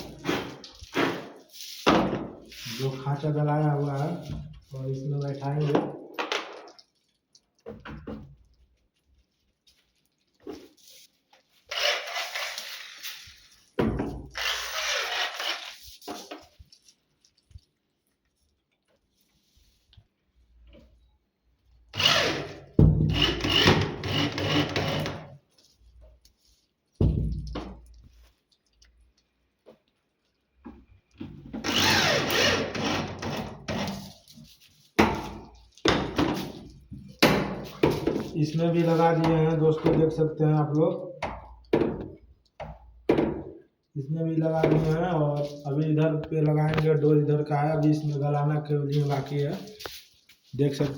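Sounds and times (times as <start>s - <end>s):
power drill driving screws: 11.7s - 13.0s, 14.4s - 15.7s, 22.0s - 25.2s, 31.6s - 33.5s.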